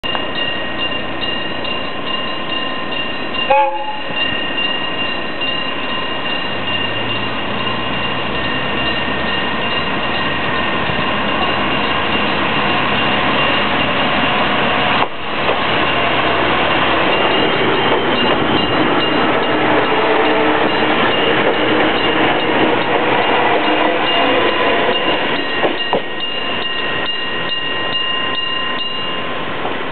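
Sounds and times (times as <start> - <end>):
diesel train engine pulling away: 0.1 - 29.9
train horn blast: 3.5 - 4.2, 19.6 - 21.0.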